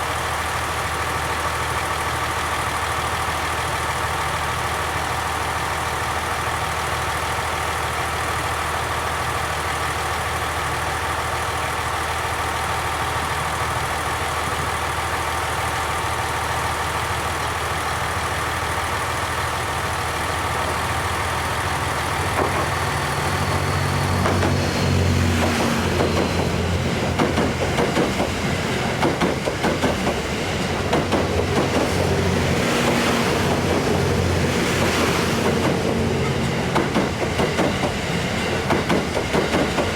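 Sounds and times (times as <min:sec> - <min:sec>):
diesel train engine idling: 0:00.0 - 0:39.9
train wheels clicking over rail joints: 0:01.1 - 0:39.9.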